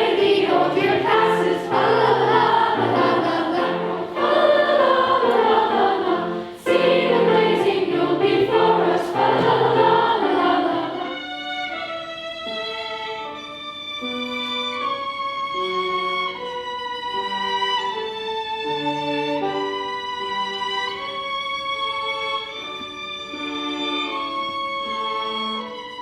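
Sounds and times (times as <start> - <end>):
choir singing: 0.0 - 12.1
violin: 0.0 - 26.0.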